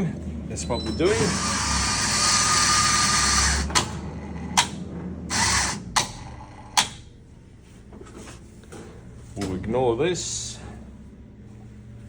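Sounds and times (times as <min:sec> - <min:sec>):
motor whirring with thin whine: 0:00.8 - 0:03.8.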